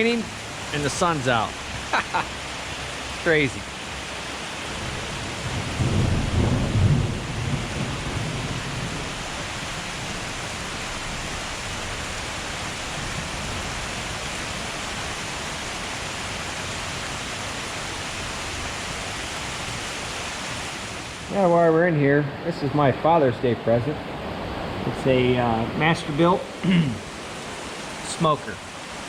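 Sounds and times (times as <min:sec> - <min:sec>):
heavy rain: 0:00.0 - 0:29.0
thunder rumble: 0:04.7 - 0:13.9.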